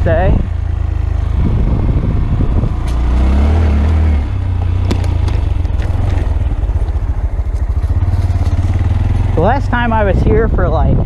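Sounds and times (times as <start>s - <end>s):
motorcycle engine revving: 0.0s - 11.0s
sharp clicks and knocks: 4.6s - 7.7s.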